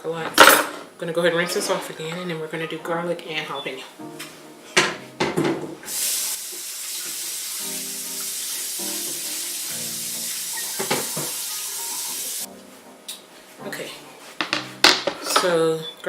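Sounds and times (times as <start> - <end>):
dishes knocking: 4.8 - 5.8, 10.6 - 11.4, 14.4 - 15.4
tap running into sink: 5.4 - 12.4.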